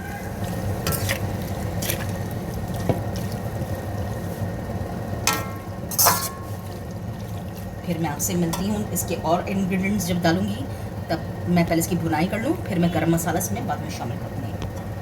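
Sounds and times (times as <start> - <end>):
food stir-frying in a pan: 0.0 - 12.3
spatula scraping a pan: 5.4 - 6.7.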